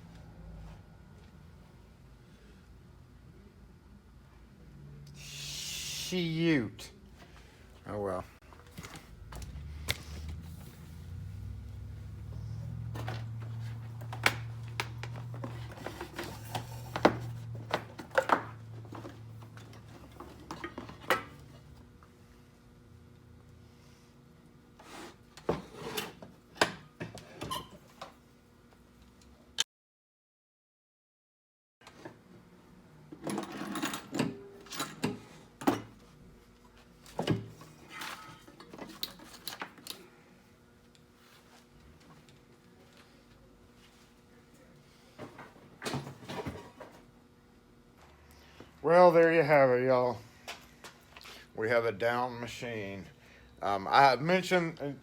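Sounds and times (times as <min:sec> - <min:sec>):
low electric hum: 0:00.0 - 0:29.6
faint steady hum: 0:32.4 - 0:55.0.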